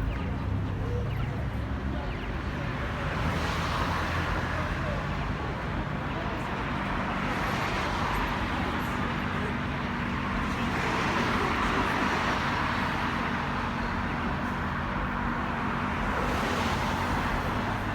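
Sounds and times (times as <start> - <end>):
cars passing and idling: 0.0 - 17.9.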